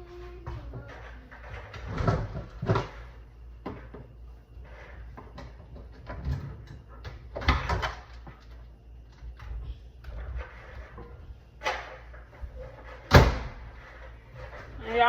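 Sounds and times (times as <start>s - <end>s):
cupboards and drawers banging: 0.4s - 4.1s, 10.1s - 15.0s.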